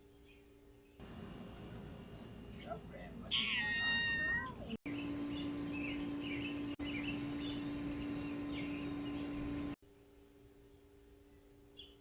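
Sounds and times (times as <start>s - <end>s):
small birds chirping: 0.0s - 12.0s
steady low hum: 0.5s - 3.3s, 4.6s - 11.8s
cat meowing: 3.3s - 4.8s.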